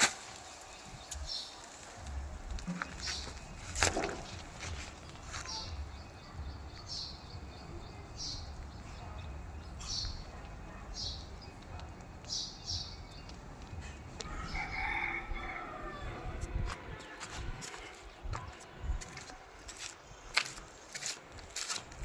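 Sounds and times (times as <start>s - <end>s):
rooster crowing: 14.2s - 16.4s.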